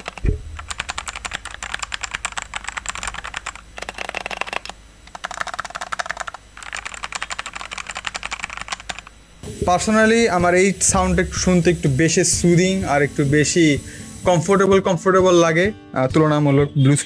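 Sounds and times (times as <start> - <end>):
mechanical keyboard typing: 0.0 - 9.1
fan and air-conditioner hum: 0.0 - 17.0
low thump: 0.2 - 0.6.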